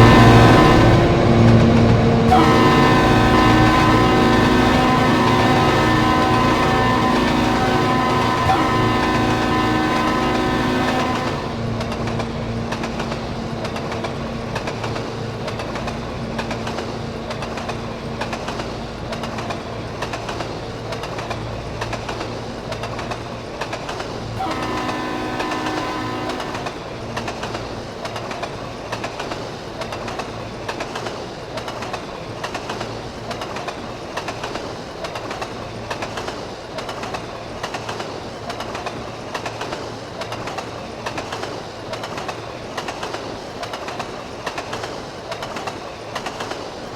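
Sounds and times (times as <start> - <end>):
train horn blast: 0.0 - 12.6, 24.3 - 27.5
train engine hum: 0.0 - 46.9
wheels clacking over rail joints: 0.0 - 46.9.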